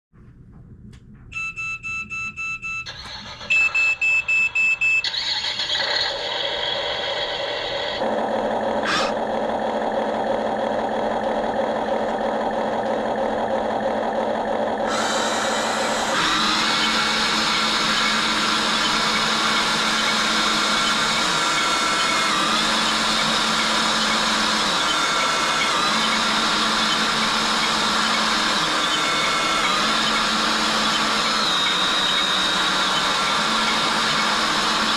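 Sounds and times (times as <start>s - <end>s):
electronic beeps: 1.4s - 5.2s
toy excavator motors whirring: 2.9s - 8.0s, 8.8s - 9.2s, 14.8s - 34.9s.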